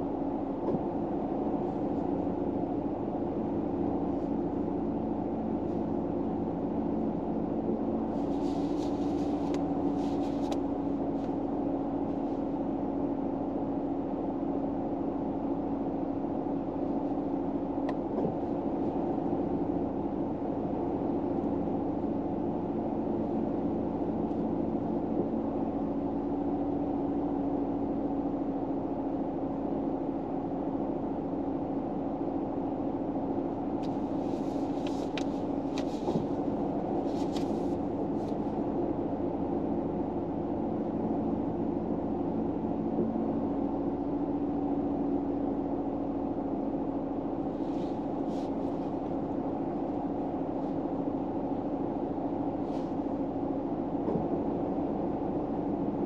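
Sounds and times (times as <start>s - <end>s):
car cabin hum: 0.0s - 56.0s
soft rustle: 8.0s - 12.7s, 33.8s - 38.8s, 47.4s - 51.8s, 52.4s - 53.4s.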